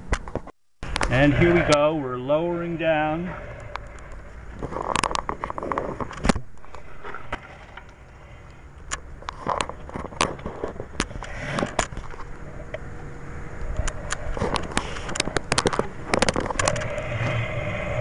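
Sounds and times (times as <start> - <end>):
low steady rumble: 0.0 - 18.0.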